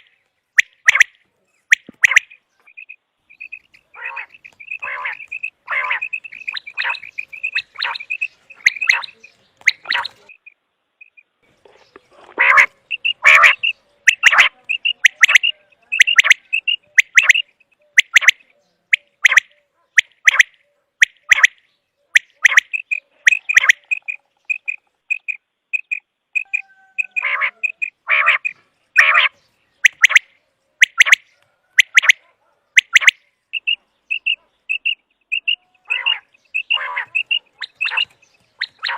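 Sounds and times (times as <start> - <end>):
quail calling: 0.0 - 38.9.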